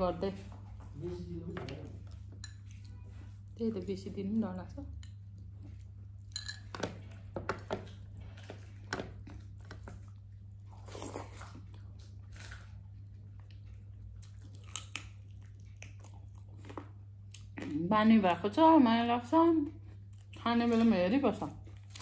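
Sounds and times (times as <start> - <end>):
low steady hum: 0.0 - 22.0
soft chewing: 0.4 - 17.8, 19.6 - 22.0
crunching fried chicken: 10.7 - 17.6.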